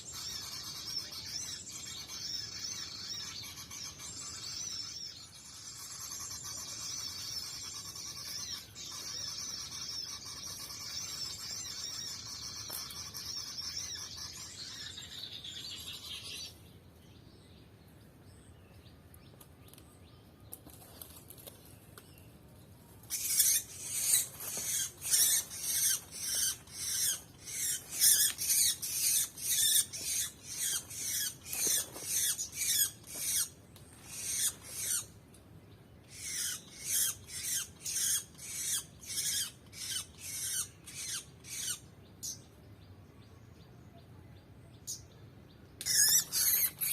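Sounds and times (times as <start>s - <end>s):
sharp rhythmic bird strokes: 0.0s - 16.6s, 23.0s - 35.2s, 36.0s - 42.5s, 45.7s - 46.9s.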